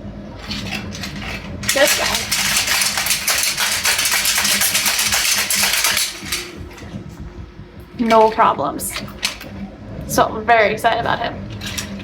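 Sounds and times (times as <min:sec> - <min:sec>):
plastic parts clattering: 0:00.4 - 0:06.6, 0:11.5 - 0:12.0.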